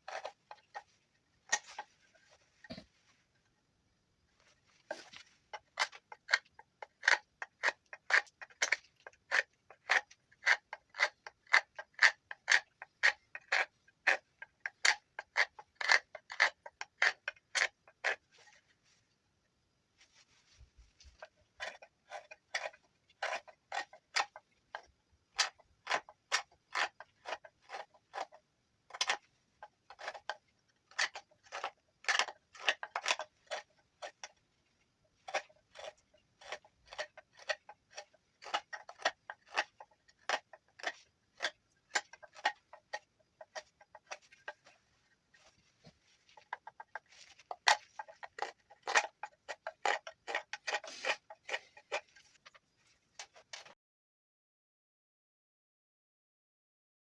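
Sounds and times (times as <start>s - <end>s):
knife whittling wood: 21.0s - 34.4s, 35.2s - 52.4s.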